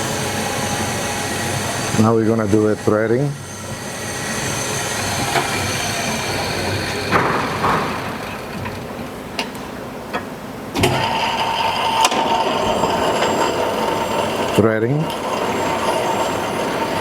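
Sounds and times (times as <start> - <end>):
lathe running: 0.0 - 17.0
machine clunk: 5.0 - 17.0.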